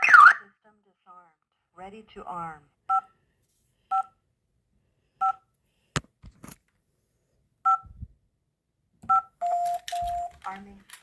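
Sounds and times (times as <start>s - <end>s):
two-tone key-press beeps: 3.9s - 4.1s, 7.7s - 8.0s, 9.1s - 10.4s.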